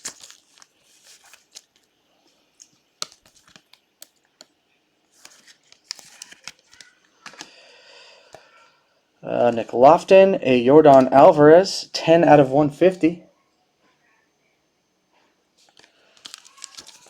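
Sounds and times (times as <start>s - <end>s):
packaging crinkling: 0.0s - 4.5s, 5.1s - 7.5s, 15.6s - 17.0s
cards clicking and tapping: 2.6s - 4.5s, 5.2s - 7.5s.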